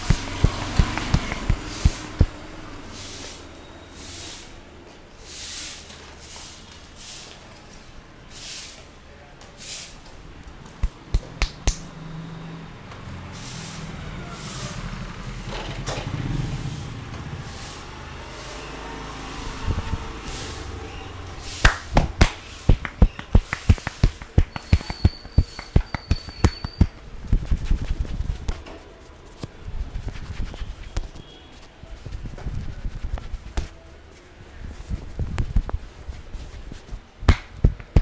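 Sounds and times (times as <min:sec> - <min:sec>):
hands slapping on a head: 0:00.0 - 0:02.4, 0:10.8 - 0:11.9, 0:21.5 - 0:27.0, 0:37.3 - 0:38.0
background noise: 0:00.0 - 0:38.0.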